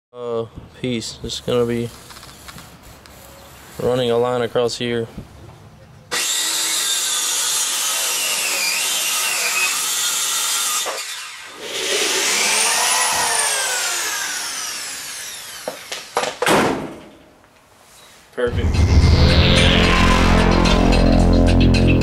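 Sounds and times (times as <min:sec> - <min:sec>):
power saw cutting board: 0:06.1 - 0:16.4.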